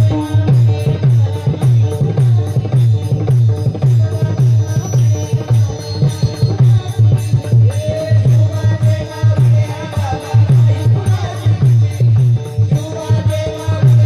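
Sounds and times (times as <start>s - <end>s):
hand drum beating: 0.0s - 14.0s
jingling hand cymbals: 0.0s - 14.0s.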